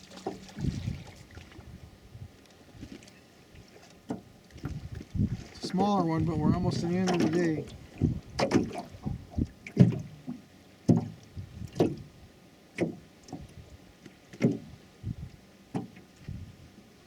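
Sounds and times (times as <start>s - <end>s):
water slapping boat: 0.0s - 17.0s
hollow knocks on boat: 4.0s - 12.1s, 12.8s - 13.6s, 14.3s - 14.7s, 15.7s - 16.4s.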